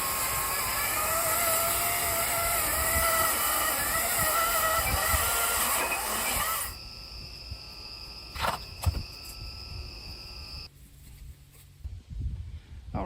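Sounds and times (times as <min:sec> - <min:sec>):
cordless chainsaw running: 0:00.0 - 0:06.8
high-pitched whine: 0:00.0 - 0:10.7.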